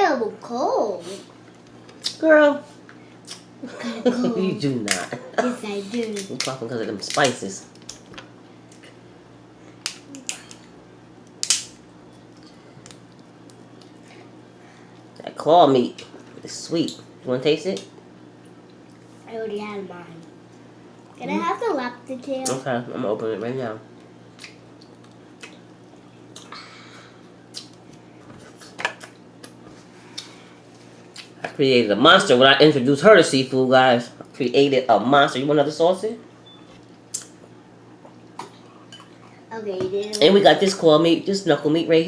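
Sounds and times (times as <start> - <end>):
lobster shell cracking: 6.0 - 8.1, 9.8 - 11.8
crab shell cracking: 9.8 - 11.8.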